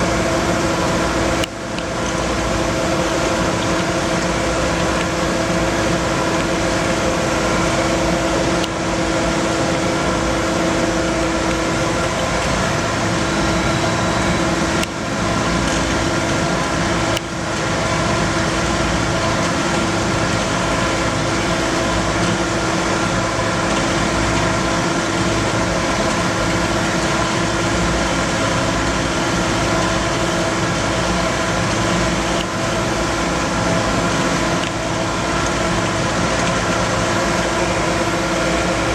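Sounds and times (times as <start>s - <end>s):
machine humming: 0.0s - 38.9s.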